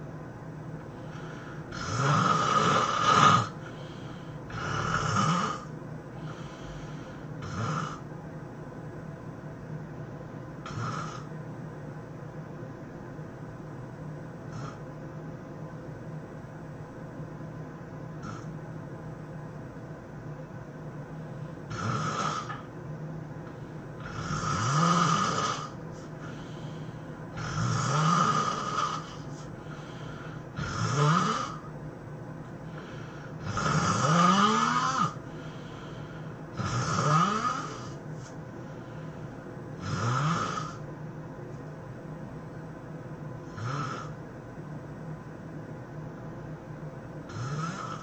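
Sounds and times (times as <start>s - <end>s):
person snoring: 1.0s - 8.0s, 10.6s - 11.3s, 14.5s - 14.8s, 18.2s - 18.6s, 21.7s - 22.7s, 24.0s - 31.7s, 32.7s - 39.2s, 39.8s - 40.8s, 43.4s - 44.2s, 47.3s - 48.0s.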